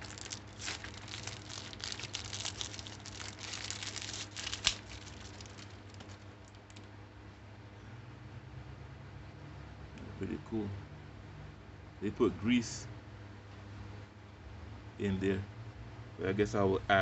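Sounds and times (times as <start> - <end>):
plastic packaging crinkling: 0.0 - 6.9.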